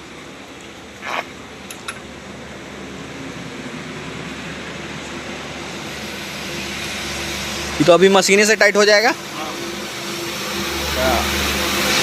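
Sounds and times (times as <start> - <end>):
road vehicle engine: 0.0 - 12.0
brief scrape: 1.0 - 1.3.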